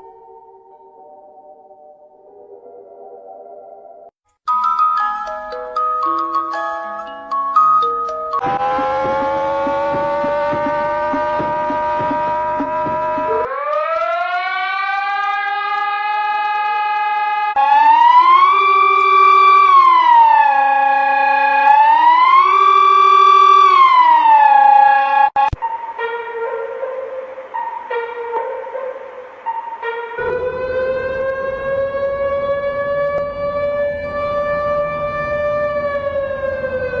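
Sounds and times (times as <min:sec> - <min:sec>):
emergency alert siren wail: 0:08.4 - 0:37.0.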